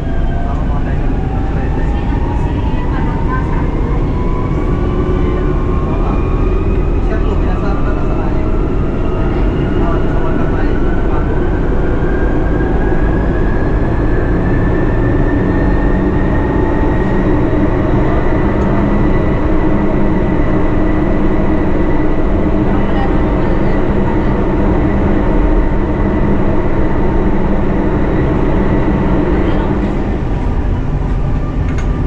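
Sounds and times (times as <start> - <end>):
train wheels rumbling on track: 0.0 - 32.0.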